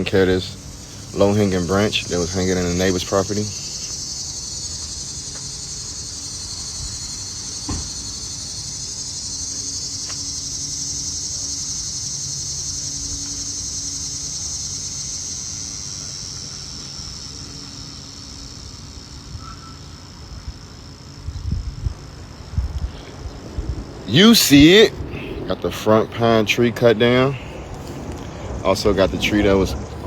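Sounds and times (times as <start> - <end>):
high-pitched insect drone: 0.0 - 30.0
sharp knock: 7.6 - 8.1.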